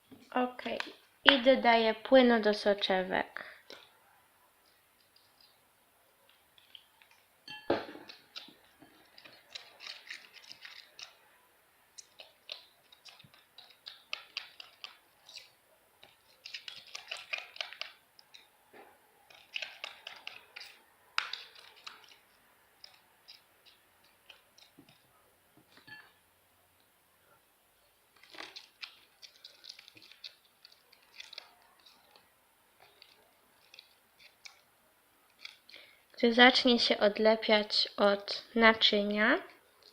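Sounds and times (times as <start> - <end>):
slime wet clicking and crackling: 12.0 - 18.5, 19.3 - 25.0, 28.2 - 34.7.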